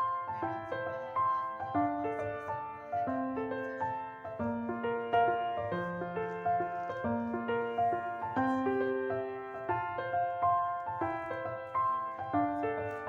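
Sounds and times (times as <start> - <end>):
gentle piano music: 0.0 - 13.0.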